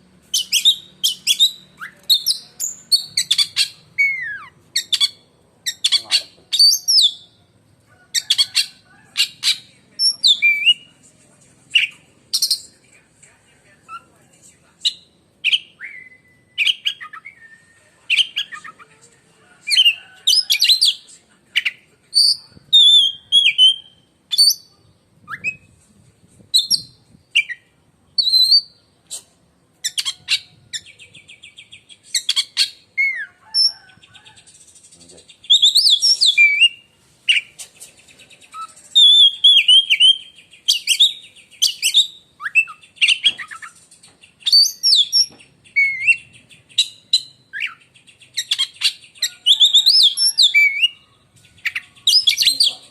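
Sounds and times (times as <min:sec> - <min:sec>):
bird singing whistled phrases: 0:14.9 - 0:18.8, 0:25.3 - 0:25.7, 0:26.6 - 0:29.2, 0:35.4 - 0:37.5, 0:38.5 - 0:43.7, 0:44.4 - 0:51.0, 0:51.6 - 0:52.7.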